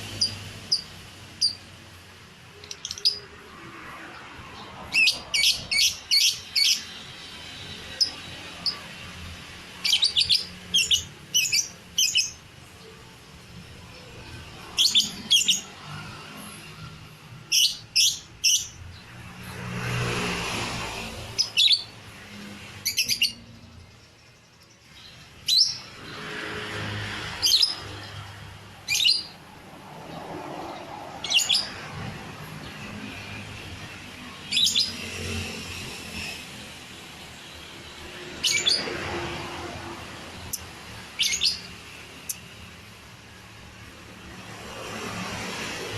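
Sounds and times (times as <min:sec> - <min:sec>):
lovebird chirping: 0:00.0 - 0:01.8, 0:02.5 - 0:03.4, 0:07.8 - 0:12.5, 0:22.8 - 0:26.0, 0:28.8 - 0:29.4, 0:34.4 - 0:35.4, 0:40.5 - 0:42.6.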